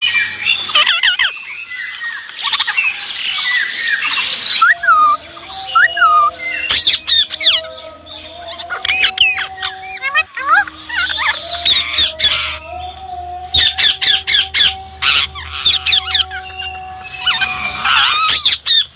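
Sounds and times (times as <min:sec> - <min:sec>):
parakeet screeching: 0:02.5 - 0:18.9
parakeet squawking and chattering: 0:04.1 - 0:18.9.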